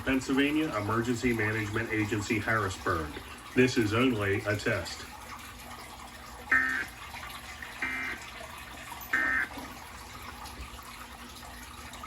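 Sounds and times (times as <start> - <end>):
digital data tone bursts: 9.2 - 9.5.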